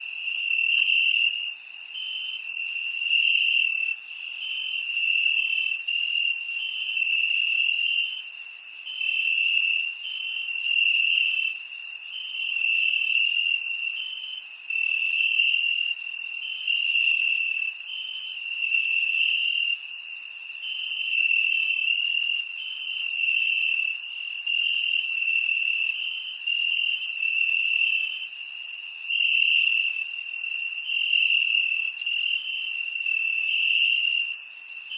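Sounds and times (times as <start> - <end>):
crickets chirping: 0.0 - 34.9.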